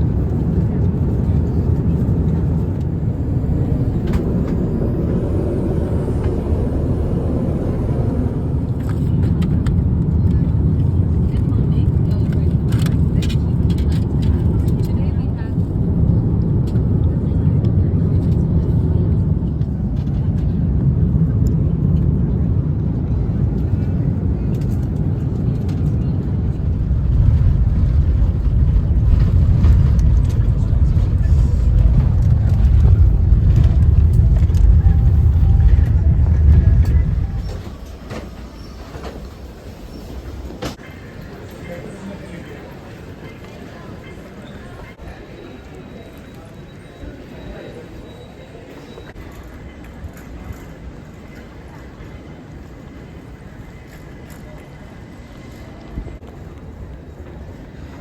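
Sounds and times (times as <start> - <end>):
vehicle rumble from inside: 0.0 - 40.8
faint voices: 0.0 - 58.0.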